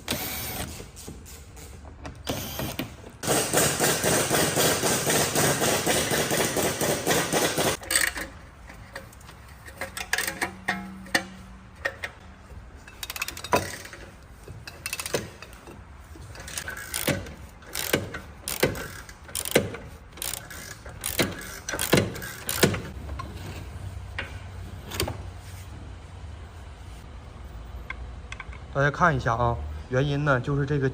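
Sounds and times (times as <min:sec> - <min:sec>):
hand tools clanking on metal: 0:05.8 - 0:23.4.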